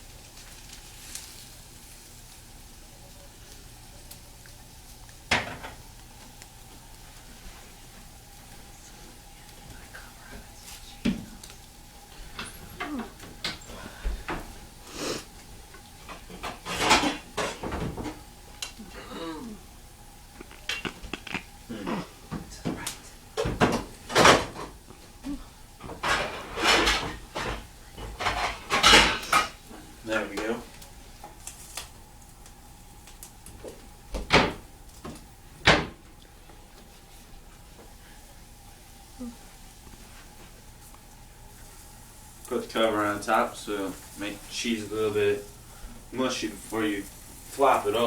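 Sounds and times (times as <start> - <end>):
utensil scraping a frying pan: 25.9 - 29.6.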